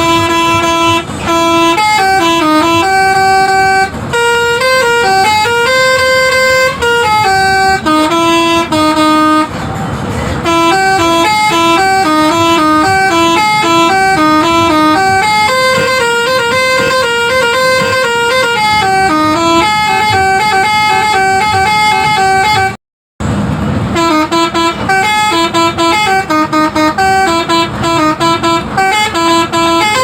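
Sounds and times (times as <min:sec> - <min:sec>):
multi-tone bus air horn melody: 0:00.0 - 0:30.0.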